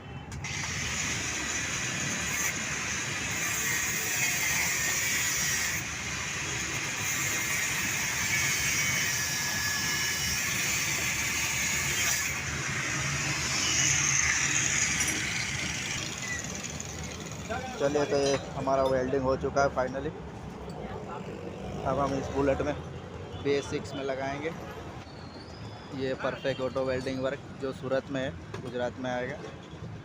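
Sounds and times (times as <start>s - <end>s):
metal grinding and welding: 0.4s - 18.7s.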